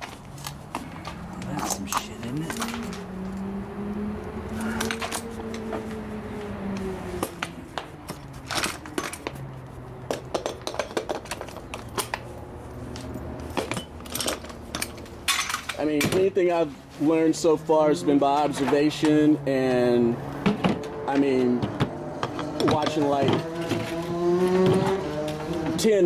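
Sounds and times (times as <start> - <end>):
metallic tool clicks and clanks: 10.0 - 12.3, 12.9 - 16.0.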